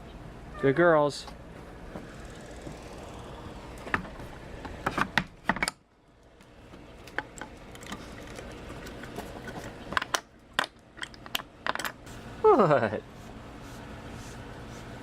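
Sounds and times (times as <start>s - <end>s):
low steady background noise: 0.0s - 15.0s.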